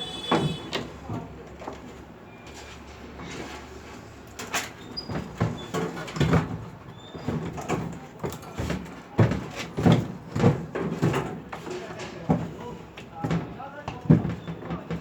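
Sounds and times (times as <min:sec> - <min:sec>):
knocks and clunks of motor: 0:00.0 - 0:00.9.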